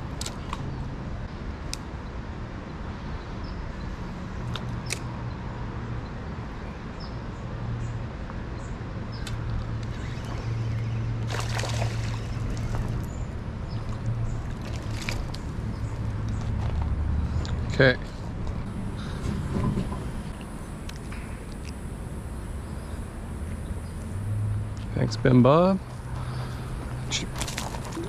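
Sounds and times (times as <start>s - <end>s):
distant road traffic rumble: 0.0s - 28.0s
creek water trickling: 9.2s - 17.6s, 26.2s - 28.0s.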